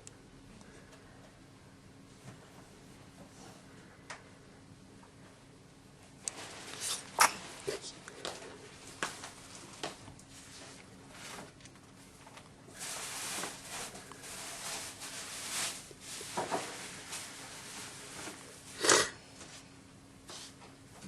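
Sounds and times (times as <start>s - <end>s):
baby sneezing: 6.8s - 7.5s.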